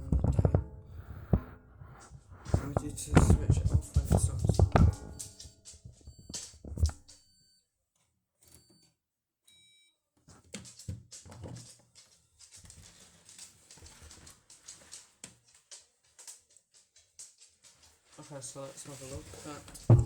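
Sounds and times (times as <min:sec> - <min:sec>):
faint electronic beeps: 0:00.0 - 0:07.6.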